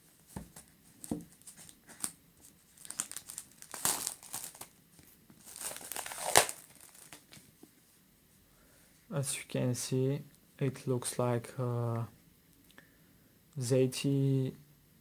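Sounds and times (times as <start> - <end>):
plastic wrap crinkling and tearing: 1.1 - 7.5.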